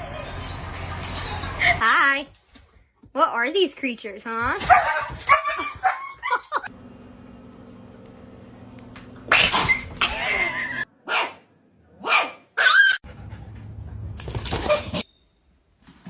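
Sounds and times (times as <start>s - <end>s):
dog barking: 11.0s - 13.0s.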